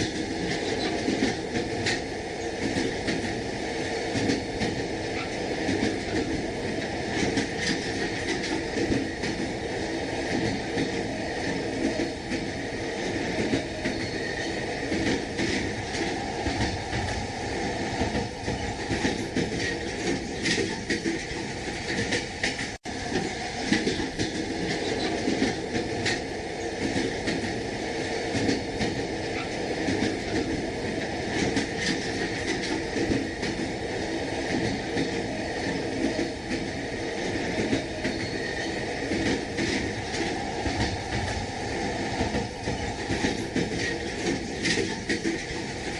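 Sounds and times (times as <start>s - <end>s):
train rumble inside carriage: 0.0s - 45.9s
wheels clacking over rail joints: 18.0s - 27.6s, 42.1s - 45.9s.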